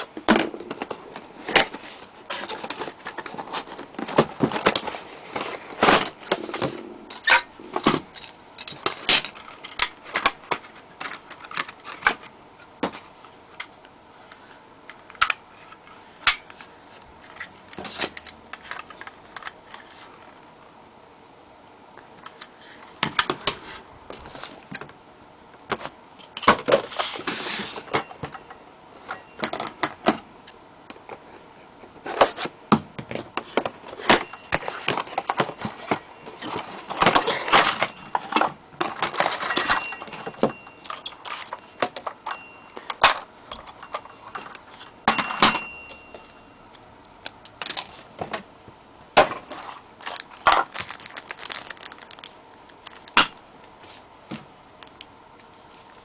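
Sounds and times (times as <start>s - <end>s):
packaging rustling: 49.5s - 53.2s.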